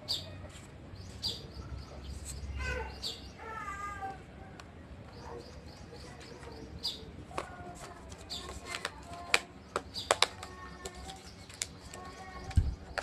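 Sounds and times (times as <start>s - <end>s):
bird chirps: 0.0s - 3.4s
packaging clicks and crinkles: 7.3s - 13.0s.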